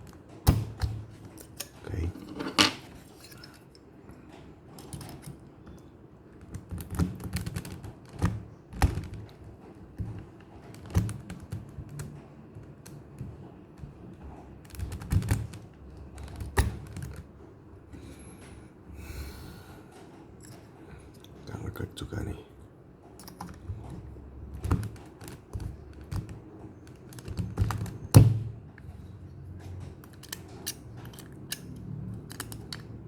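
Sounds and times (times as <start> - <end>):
keyboard clicks and plastic knocks: 4.8 - 17.4, 23.2 - 28.7.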